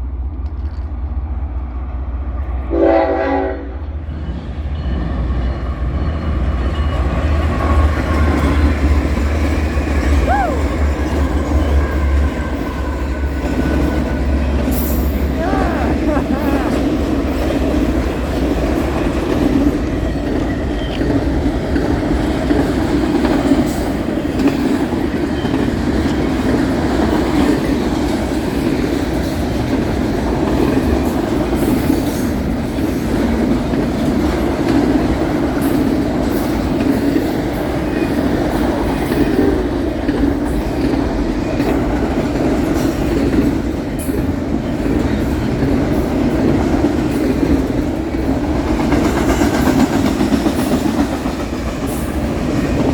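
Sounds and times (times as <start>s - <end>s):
train wheels rolling on rails: 0.0s - 52.9s.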